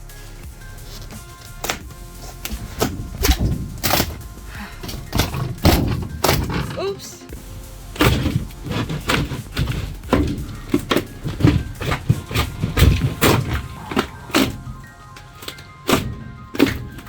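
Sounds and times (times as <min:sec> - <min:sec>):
background music: 0:00.0 - 0:17.0
knocks and thunks: 0:01.4 - 0:17.0.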